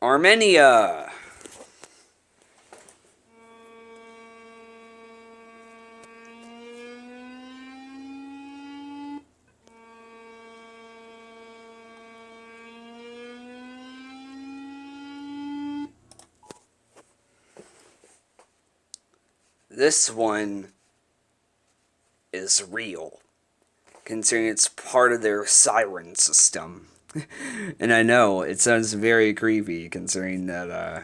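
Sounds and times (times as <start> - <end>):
warning siren wailing: 3.3 - 16.0.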